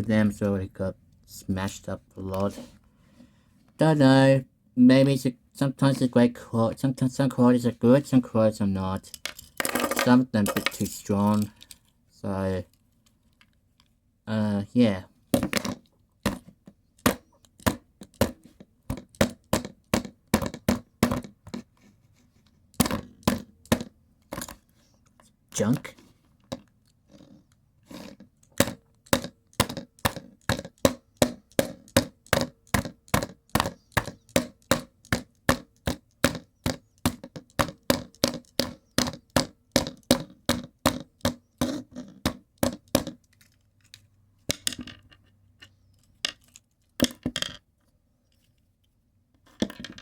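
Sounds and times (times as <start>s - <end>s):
rapid sharp hard knocks: 28.6s - 43.2s.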